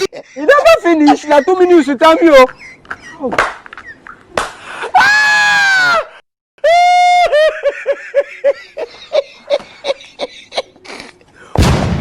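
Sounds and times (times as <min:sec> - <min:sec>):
exaggerated comedic laughter: 0:00.0 - 0:04.2, 0:04.9 - 0:11.2
loud high cry: 0:04.9 - 0:07.4.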